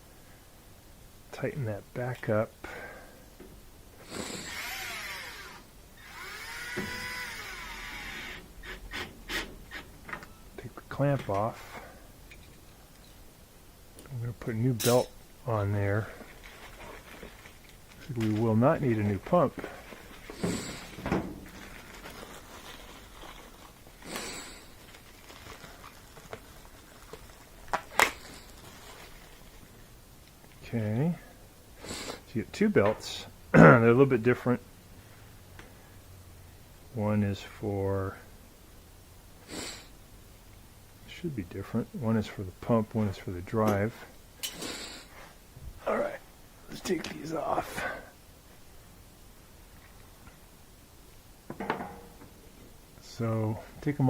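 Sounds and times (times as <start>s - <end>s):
power drill motor whine: 4.1s - 8.5s
hand handling rustle: 16.0s - 29.8s.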